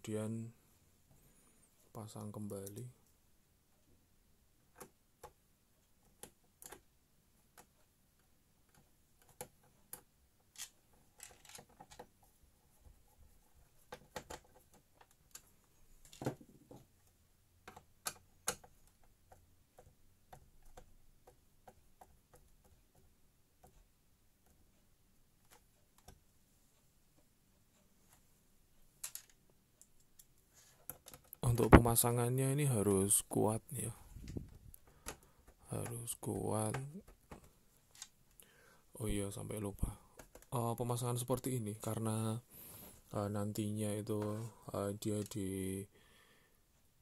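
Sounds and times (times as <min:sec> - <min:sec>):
computer parts clicking and knocking: 0:04.6 - 0:07.8, 0:08.6 - 0:12.8, 0:13.6 - 0:23.8, 0:29.0 - 0:32.5, 0:33.9 - 0:38.4, 0:39.1 - 0:42.1.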